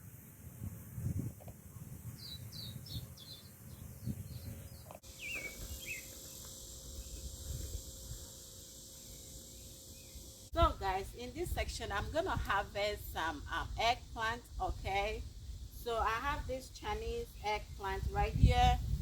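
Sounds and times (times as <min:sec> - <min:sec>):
steady high hiss: 0:00.0 - 0:03.8, 0:04.9 - 0:18.8
songbirds chirping: 0:01.6 - 0:11.2.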